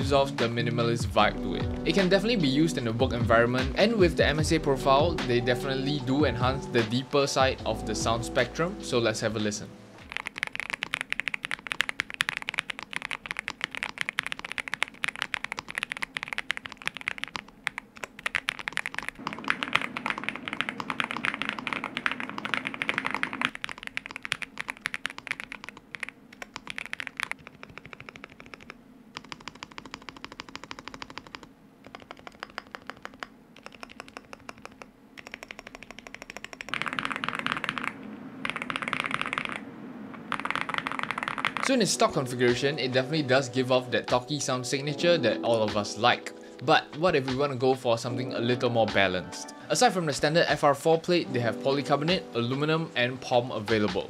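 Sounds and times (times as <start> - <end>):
fast mechanical keyboard typing: 10.0 - 39.6, 40.3 - 41.8.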